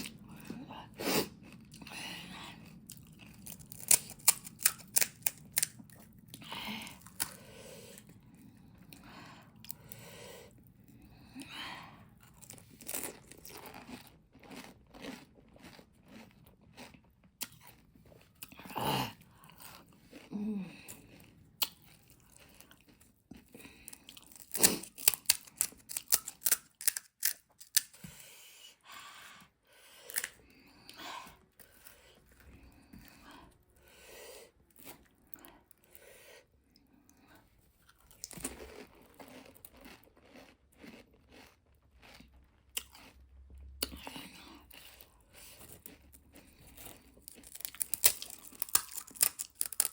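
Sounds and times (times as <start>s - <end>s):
crisp shells crunching between teeth: 2.7s - 8.2s, 12.2s - 18.7s, 19.3s - 28.0s, 30.1s - 30.4s, 37.9s - 43.2s, 44.7s - 49.9s
chewing: 12.1s - 27.9s, 36.7s - 49.9s.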